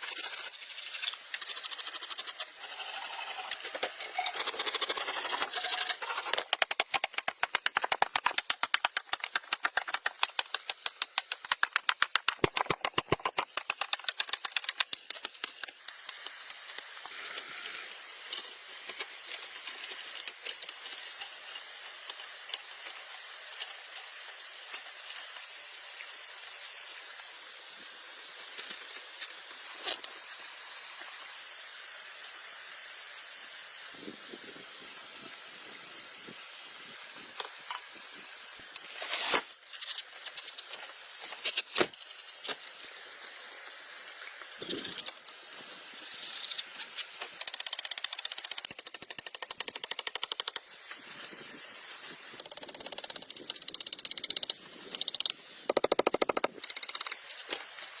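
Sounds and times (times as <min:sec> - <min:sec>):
scattered clicks: 0:04.8 - 0:17.2, 0:46.2 - 0:50.6, 0:52.4 - 0:57.3
fast sharp knocks: 0:06.4 - 0:15.1, 0:55.7 - 0:56.6.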